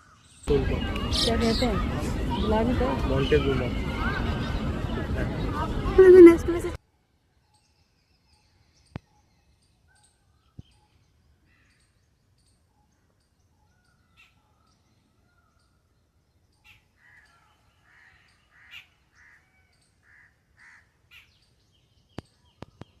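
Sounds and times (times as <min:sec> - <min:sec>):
faint bird calls: 0:16.6 - 0:21.4.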